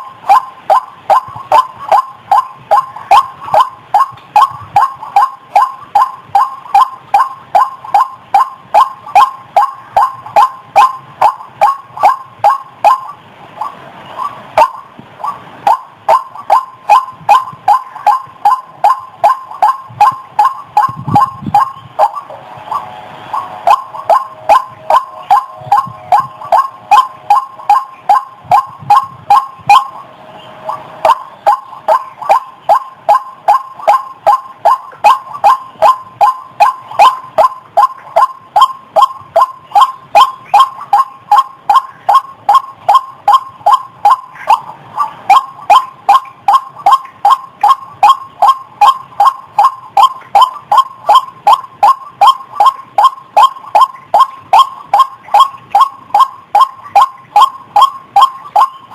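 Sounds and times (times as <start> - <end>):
waterhen calling: 0.0 - 58.9.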